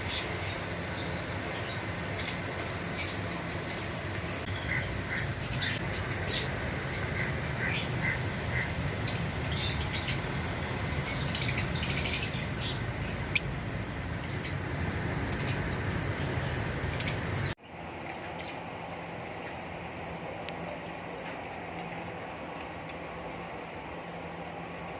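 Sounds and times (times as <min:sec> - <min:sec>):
steady low hum: 0:00.0 - 0:24.9.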